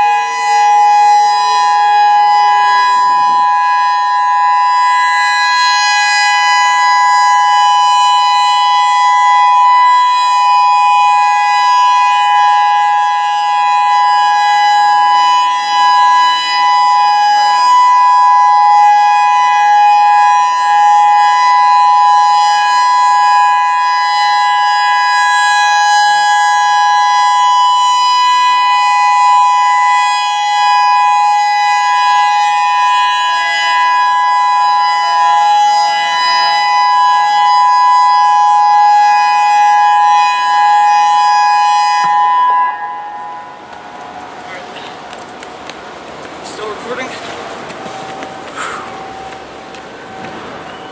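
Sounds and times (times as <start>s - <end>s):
electronic warning siren steady tone: 0.0s - 50.9s.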